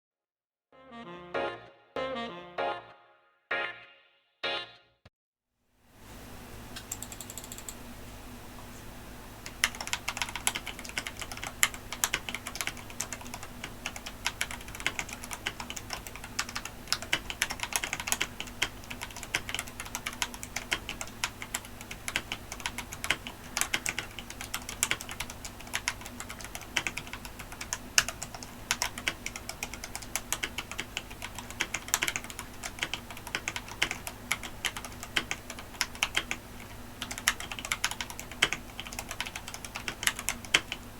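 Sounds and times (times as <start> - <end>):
mechanical keyboard typing: 6.8 - 7.8, 9.5 - 40.8.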